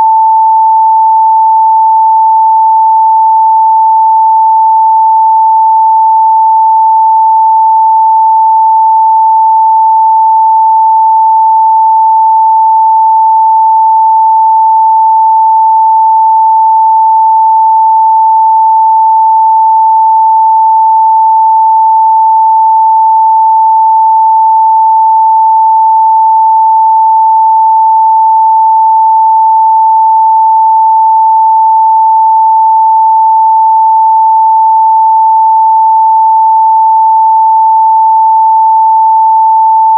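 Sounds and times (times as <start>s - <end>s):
sine-wave test tone: 0.0s - 39.9s.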